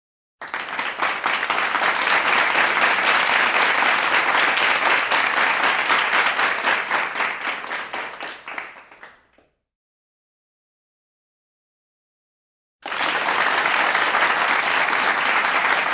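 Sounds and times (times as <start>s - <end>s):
crowd applauding: 0.4s - 9.4s, 12.8s - 15.9s.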